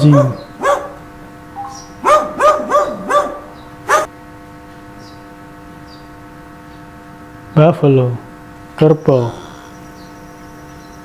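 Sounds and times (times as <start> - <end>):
dog barking: 0.0 - 1.0, 2.0 - 4.1.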